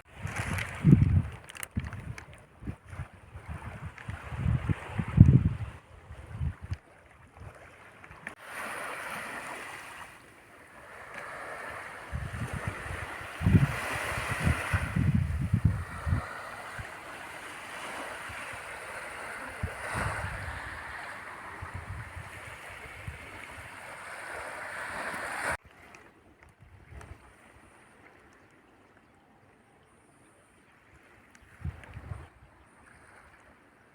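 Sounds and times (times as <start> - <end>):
wind buffeting microphone: 0.1 - 6.8, 12.0 - 17.2, 17.8 - 25.6, 31.4 - 32.6
waves washing onto a beach: 7.7 - 26.1.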